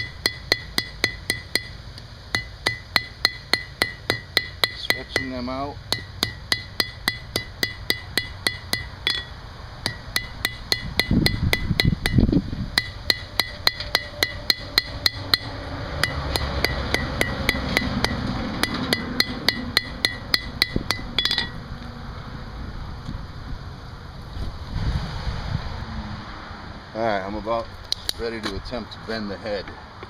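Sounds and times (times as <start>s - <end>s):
hammer striking steel on anvil: 0.0s - 21.6s.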